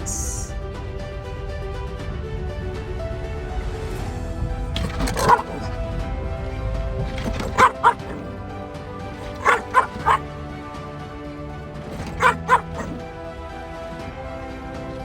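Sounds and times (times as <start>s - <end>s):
background music: 0.0s - 15.0s
puppy yipping: 4.8s - 5.7s, 7.2s - 8.4s, 9.2s - 10.2s, 11.9s - 13.0s.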